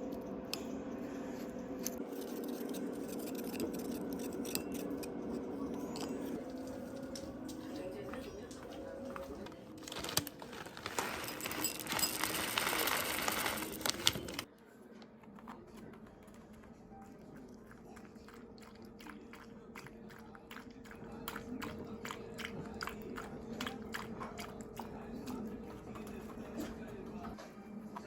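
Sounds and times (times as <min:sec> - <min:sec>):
dog crunching something hard: 0:06.1 - 0:14.5.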